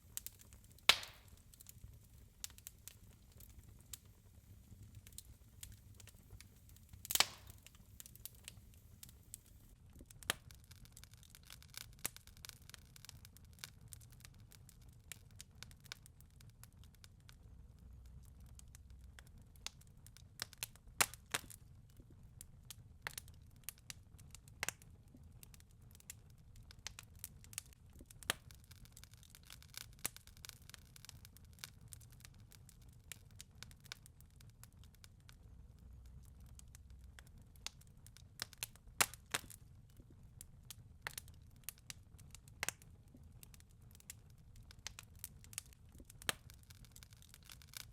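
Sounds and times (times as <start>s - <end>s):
wood fire crackling: 0.0s - 47.9s.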